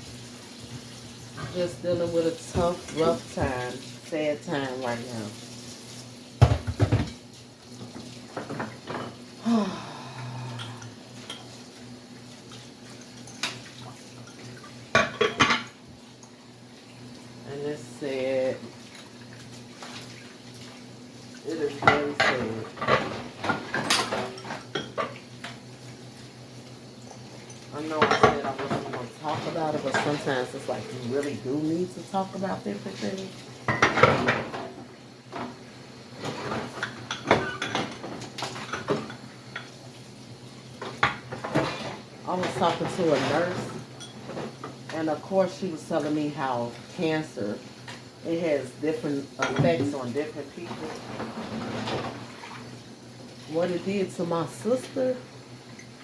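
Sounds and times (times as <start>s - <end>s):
dishes and cutlery clattering: 36.2s - 39.7s
dishes and cutlery clinking: 36.2s - 39.7s, 40.8s - 44.6s.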